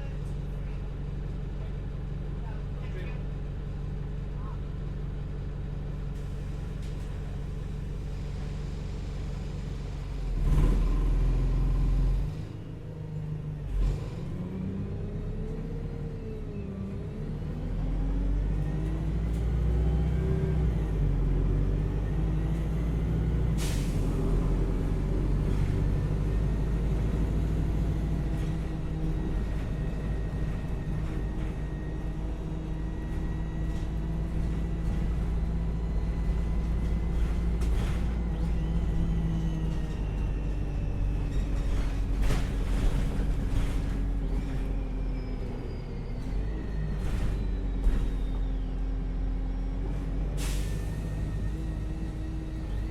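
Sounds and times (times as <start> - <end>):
bus engine: 0.0 - 52.9
air brake hiss: 23.6 - 24.2, 50.4 - 51.0.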